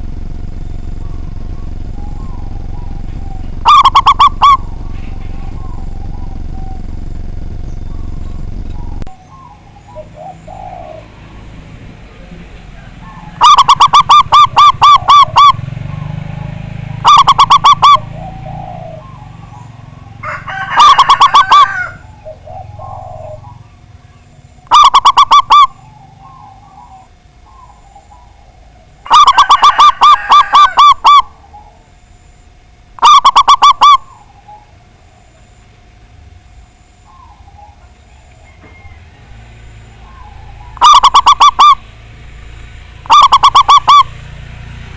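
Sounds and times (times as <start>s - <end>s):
dove cooing: 0.0s - 44.9s.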